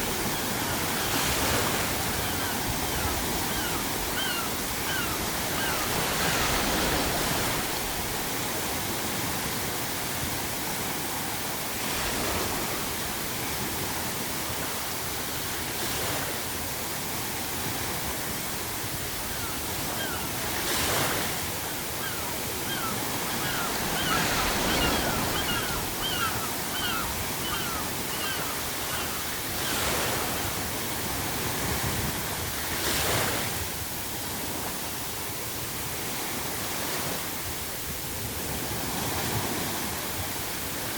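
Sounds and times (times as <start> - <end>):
ocean waves breaking: 0.0 - 35.0
seagulls calling: 0.1 - 7.0, 19.0 - 30.4.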